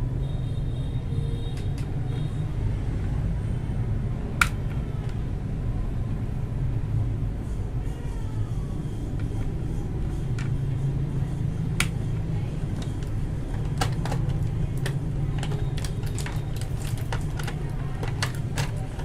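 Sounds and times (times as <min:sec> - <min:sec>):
steady low hum: 0:02.2 - 0:15.5.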